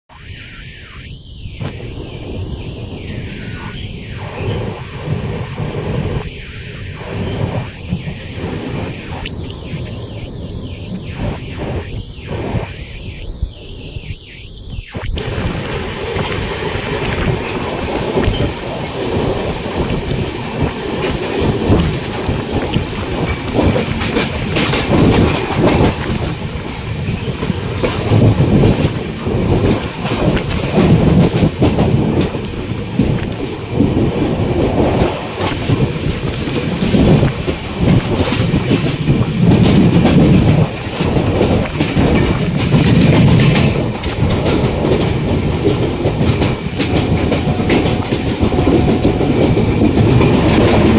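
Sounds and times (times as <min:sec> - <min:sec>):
rush of air: 0:00.1 - 0:50.9
train rumbling: 0:00.1 - 0:50.9
wheels clattering over rail joints: 0:15.7 - 0:50.9.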